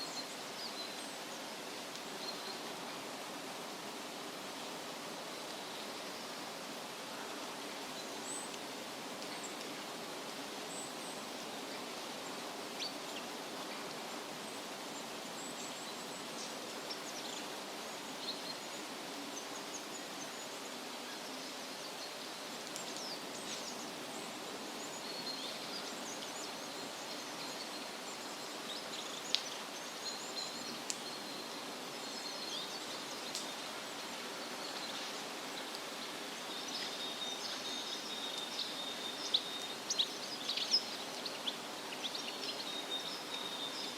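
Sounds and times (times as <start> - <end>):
steady rushing hiss: 0.0 - 43.9
small birds chirping: 10.7 - 43.9.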